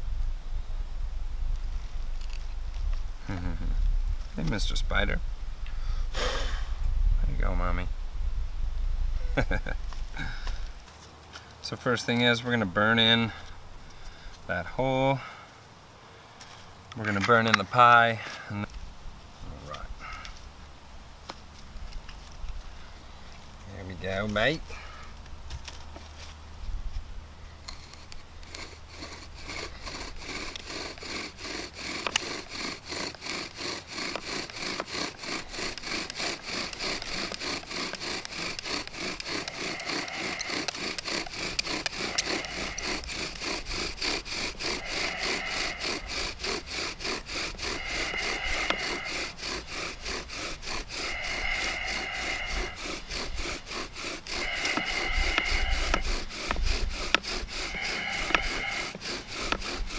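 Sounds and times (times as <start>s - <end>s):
bow drill spindle grinding: 1.5s - 7.8s, 11.7s - 15.3s, 27.6s - 59.9s.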